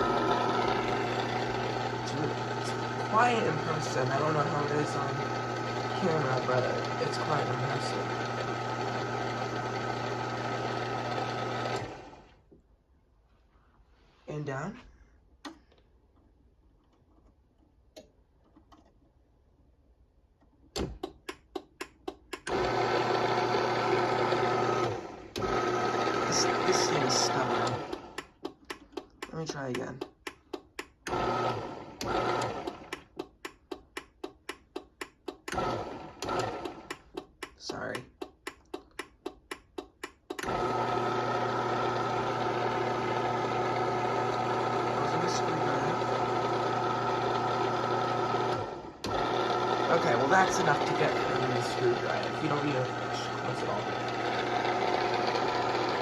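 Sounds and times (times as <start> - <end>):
garage door opener motor humming: 0.0 - 12.4, 22.4 - 28.2, 31.1 - 33.0, 35.4 - 36.9, 40.4 - 56.0.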